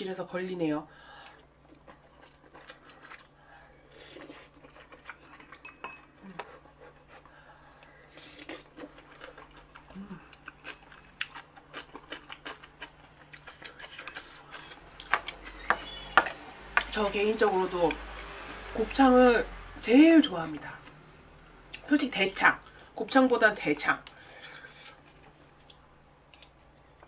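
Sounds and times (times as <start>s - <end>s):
cutlery clinking on bowls: 5.1s - 6.2s.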